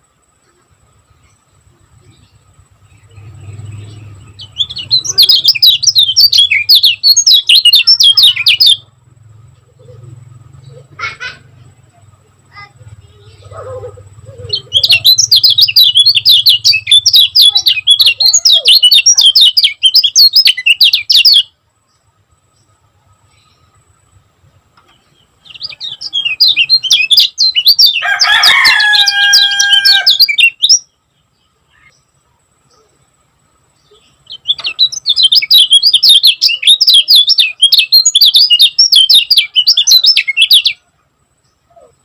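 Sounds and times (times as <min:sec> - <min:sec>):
bird high chirps: 0:00.0 - 0:23.9, 0:24.8 - 0:33.1, 0:33.7 - 0:42.0
lower held bird call: 0:25.4 - 0:30.9.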